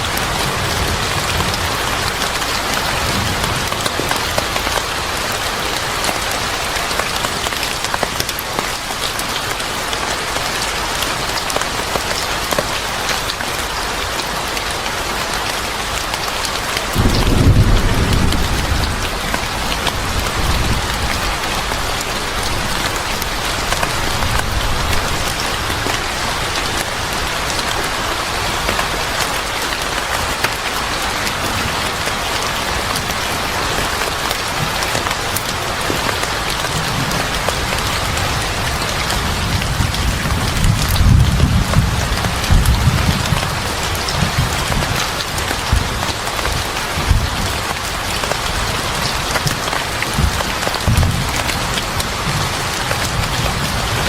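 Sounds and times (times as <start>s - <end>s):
steady rain falling: 0.0s - 54.0s
thunder rumbling: 16.9s - 26.1s, 49.1s - 54.0s.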